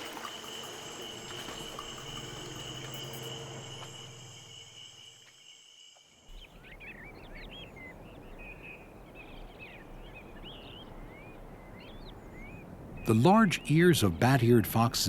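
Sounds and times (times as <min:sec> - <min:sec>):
low hum: 0:00.0 - 0:05.3
shrill insect trilling: 0:00.0 - 0:06.4.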